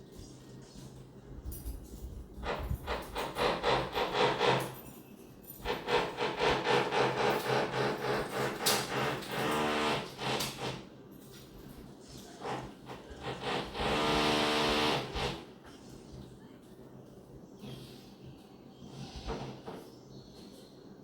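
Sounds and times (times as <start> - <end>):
power tool whine: 6.1 - 10.8, 13.2 - 15.4.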